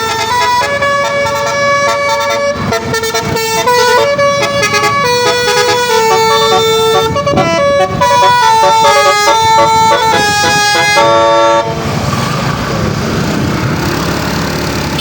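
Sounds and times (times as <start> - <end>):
tuned air horns playing tune: 0.0 - 11.8.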